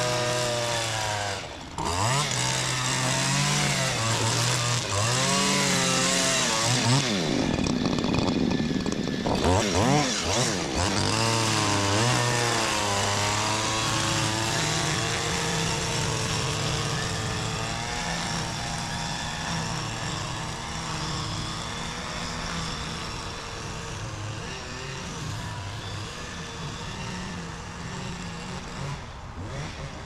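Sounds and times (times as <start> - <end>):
petrol engine running: 1.4 - 24.2.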